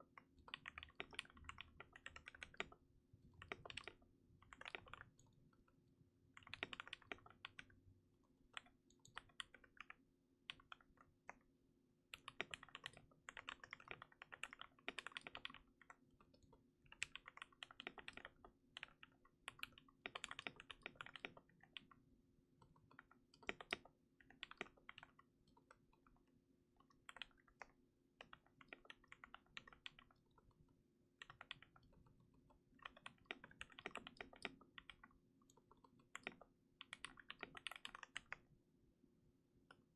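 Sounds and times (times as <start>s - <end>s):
mechanical keyboard typing: 0.4s - 2.8s, 3.4s - 5.3s, 6.4s - 7.7s, 8.6s - 9.9s, 12.1s - 21.9s, 22.6s - 25.8s, 26.9s - 30.6s, 31.2s - 38.4s.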